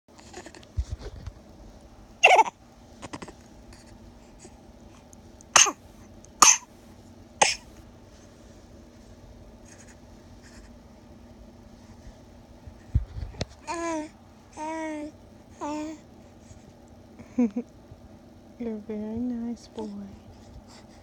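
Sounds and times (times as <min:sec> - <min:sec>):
baby coughing: 0:02.2 - 0:02.5, 0:05.6 - 0:05.8, 0:06.4 - 0:06.7, 0:07.4 - 0:07.7.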